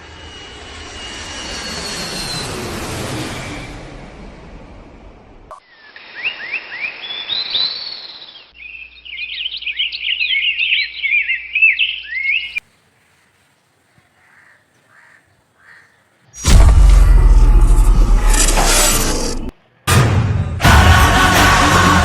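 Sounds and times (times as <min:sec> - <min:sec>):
birds chirping: 0:05.7 - 0:16.4.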